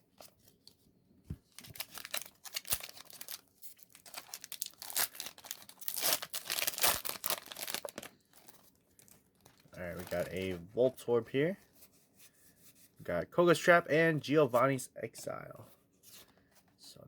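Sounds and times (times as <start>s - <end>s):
foil wrapper tearing and crinkling: 1.5s - 10.4s.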